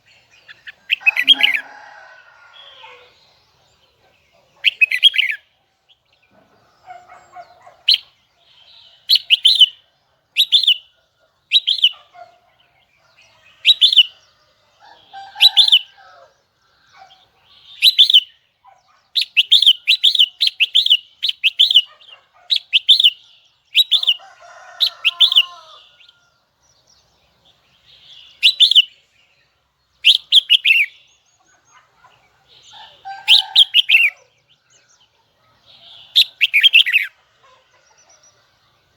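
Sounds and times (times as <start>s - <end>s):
bird singing sharp phrases: 0.0s - 38.9s.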